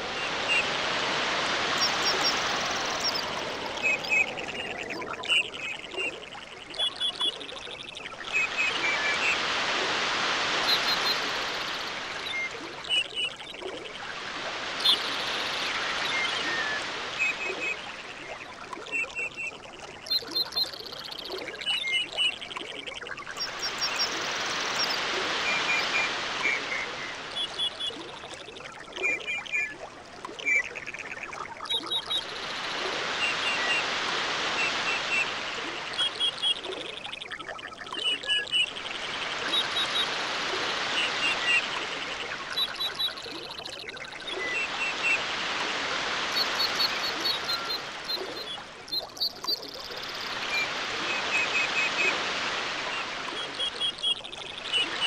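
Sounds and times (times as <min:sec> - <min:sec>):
waves washing in: 0:00.0 - 0:20.4, 0:23.3 - 0:28.4, 0:29.0 - 0:55.0.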